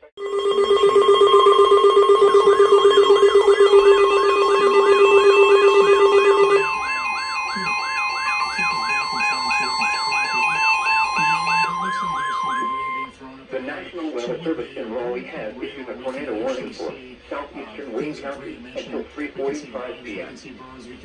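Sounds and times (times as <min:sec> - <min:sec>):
warbling siren-like alert tone: 0:00.0 - 0:13.1
low rapidly pulsing tone: 0:00.2 - 0:13.1
steady alert tones: 0:00.2 - 0:13.1.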